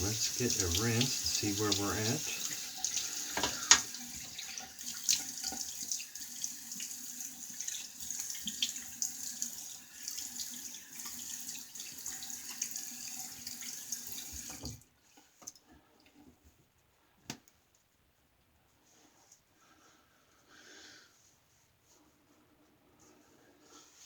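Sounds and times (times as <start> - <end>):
tap running into a sink: 0.0 - 5.9, 13.4 - 14.8.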